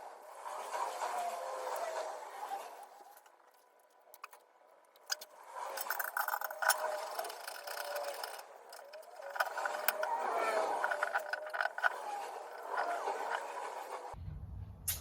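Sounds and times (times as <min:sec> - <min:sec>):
tape scraping and rustling: 0:00.4 - 0:14.2
metal parts clinking: 0:02.9 - 0:13.6.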